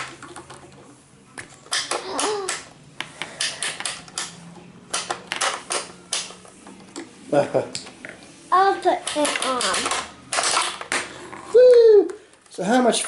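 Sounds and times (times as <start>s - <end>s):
plastic toy pieces clicking and rattling: 1.7s - 6.4s, 8.8s - 11.0s.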